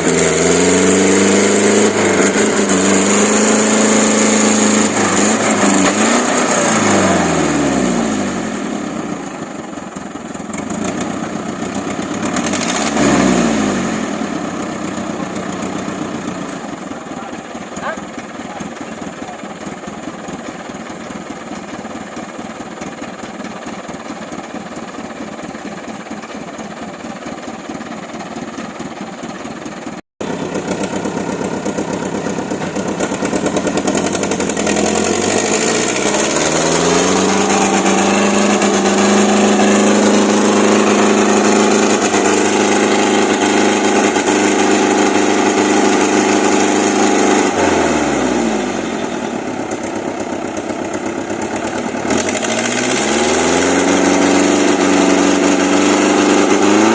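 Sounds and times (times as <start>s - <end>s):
diesel truck engine revving: 0.0s - 9.8s, 10.5s - 19.4s, 30.2s - 56.9s.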